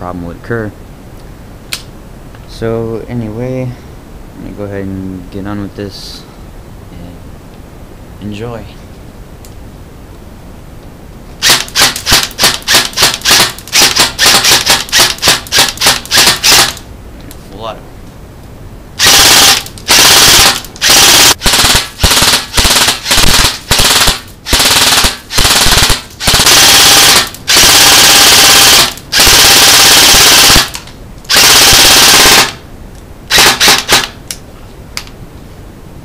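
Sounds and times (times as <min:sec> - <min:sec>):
airsoft rifle firing bursts: 0:11.4 - 0:16.8, 0:19.0 - 0:32.6, 0:33.3 - 0:34.2.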